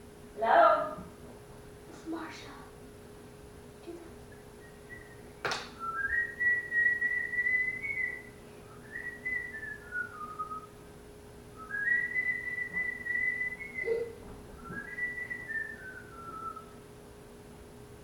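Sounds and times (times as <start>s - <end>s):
parrot whistling a tune: 4.3s - 10.8s, 11.6s - 16.8s.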